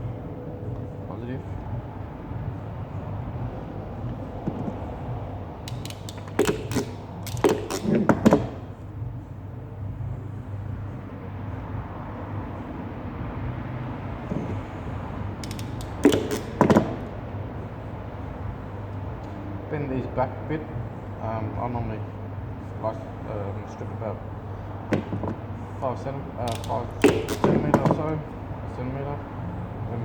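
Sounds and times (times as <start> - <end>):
steady low hum: 0.0 - 30.0
hand tools clicking and snapping: 5.7 - 8.6, 15.4 - 17.1, 26.5 - 27.9.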